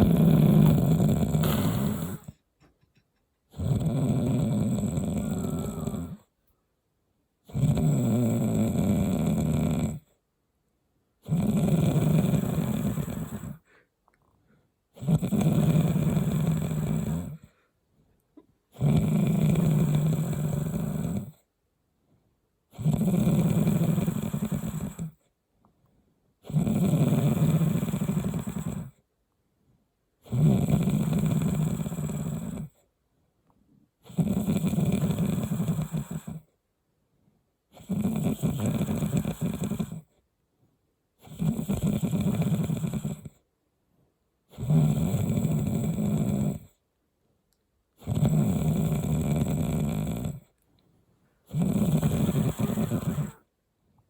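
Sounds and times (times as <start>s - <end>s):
person snoring heavily: 0.0s - 2.4s, 3.5s - 6.3s, 7.5s - 10.0s, 11.2s - 13.8s, 15.0s - 17.6s, 18.8s - 21.3s, 22.8s - 25.2s, 26.5s - 28.9s, 30.3s - 32.8s, 34.1s - 36.4s, 37.8s - 40.1s, 41.2s - 43.3s, 44.5s - 46.7s, 48.0s - 50.4s, 51.5s - 53.5s.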